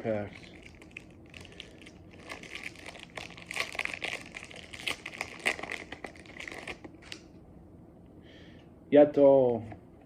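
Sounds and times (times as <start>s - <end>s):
foil wrapper crinkling: 0.0s - 7.2s.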